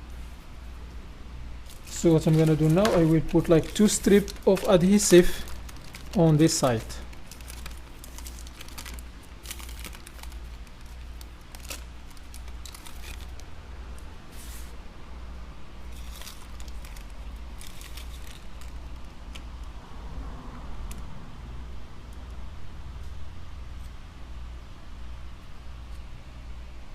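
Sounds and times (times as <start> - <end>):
steady low hum: 0.0 - 26.9
plastic film crinkling and tearing: 1.6 - 13.5, 15.8 - 19.6.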